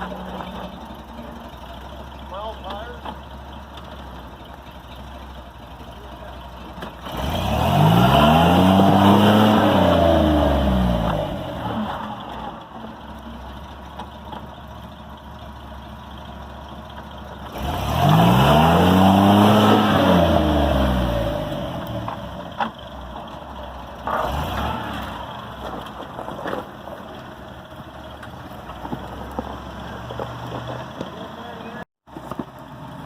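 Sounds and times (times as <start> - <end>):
vehicle engine revving: 6.8 - 13.1, 17.4 - 31.8.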